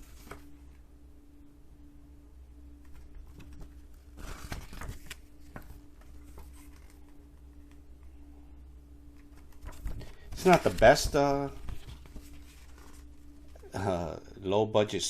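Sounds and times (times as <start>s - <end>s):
paper rustling: 0.0s - 0.7s, 2.8s - 7.8s, 9.1s - 13.7s
faint steady hum: 0.0s - 15.0s.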